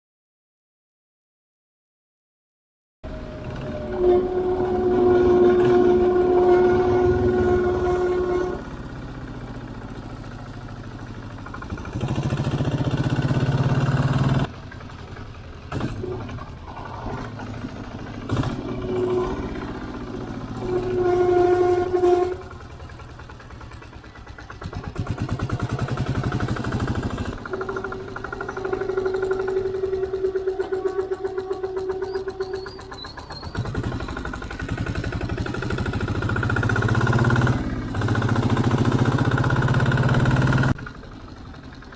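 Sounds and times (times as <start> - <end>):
vehicle running: 3.0 - 41.9
drum brake squealing: 3.1 - 9.0, 15.7 - 24.8, 25.9 - 37.5.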